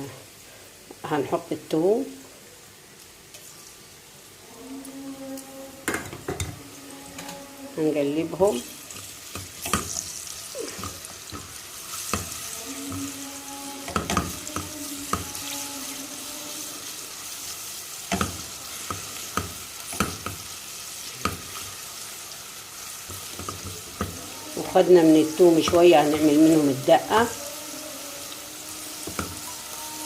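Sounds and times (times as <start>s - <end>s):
garlic sizzling in oil: 0.0s - 30.0s
spoon knocking against pan: 13.9s - 15.3s, 18.1s - 20.4s.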